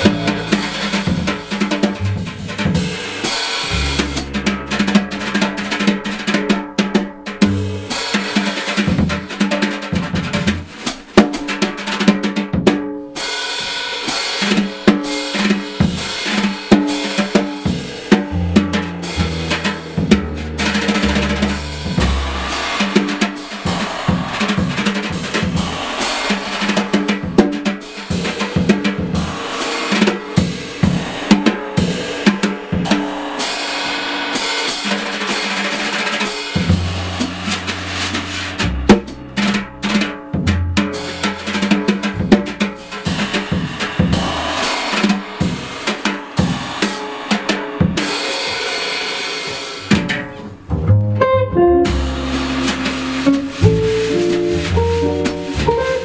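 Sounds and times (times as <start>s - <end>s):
low sustained notes: 0.0s - 2.4s
jazz combo playing: 0.0s - 9.4s, 10.1s - 10.9s, 16.9s - 29.3s, 36.5s - 45.7s, 49.8s - 56.0s
busy drum kit: 0.0s - 56.0s.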